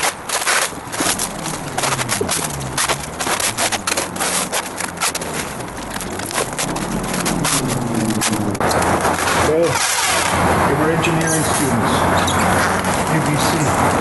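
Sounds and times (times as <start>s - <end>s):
plastic stretch wrap crackling: 0.0s - 10.3s.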